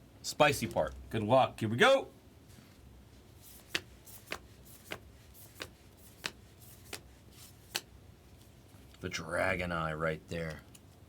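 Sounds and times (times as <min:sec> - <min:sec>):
trading cards snapping: 0:03.6 - 0:07.9.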